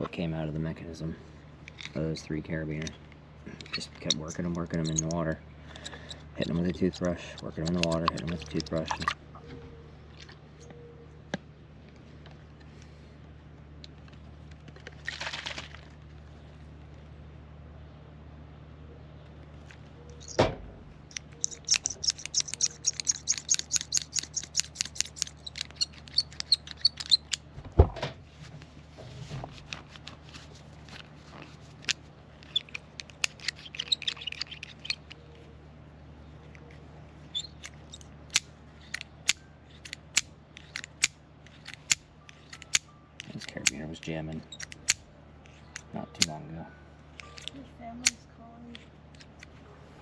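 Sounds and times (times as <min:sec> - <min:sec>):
carabiner gate clicking: 0:21.1 - 0:27.4
toothbrush scrubbing metal: 0:21.4 - 0:27.3.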